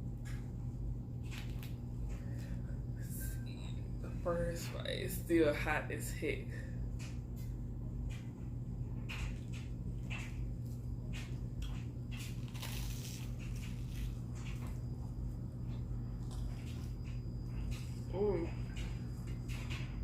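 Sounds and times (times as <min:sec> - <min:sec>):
steady low hum: 0:00.0 - 0:20.0
chewing toasted sandwich: 0:09.1 - 0:17.9.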